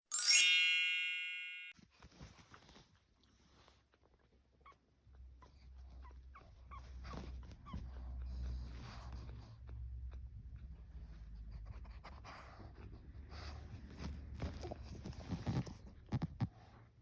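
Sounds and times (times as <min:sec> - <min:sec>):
ringing chime: 0:00.1 - 0:01.8.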